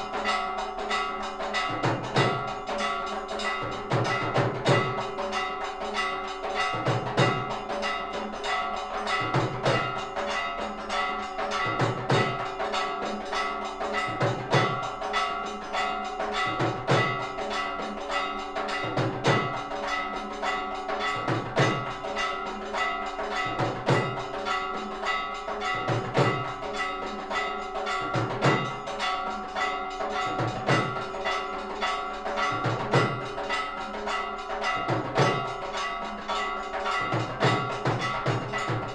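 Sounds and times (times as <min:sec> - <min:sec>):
bells ringing rapidly: 0:00.0 - 0:38.9.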